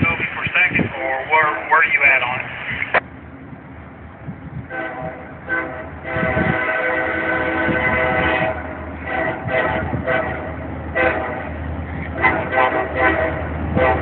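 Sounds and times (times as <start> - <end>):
low rumble of passing train: 0.0 - 14.0
locomotive air horn blasts: 0.8 - 1.6, 4.7 - 14.0.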